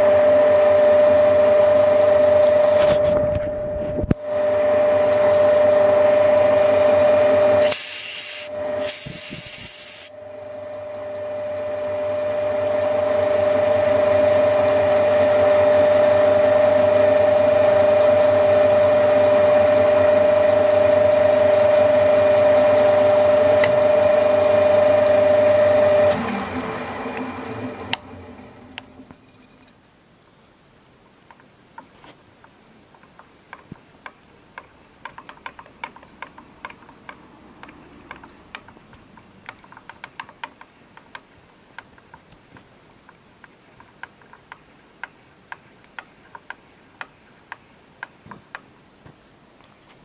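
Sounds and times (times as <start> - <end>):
milling machine whine: 0.0 - 29.8
short harsh hisses: 7.6 - 10.1.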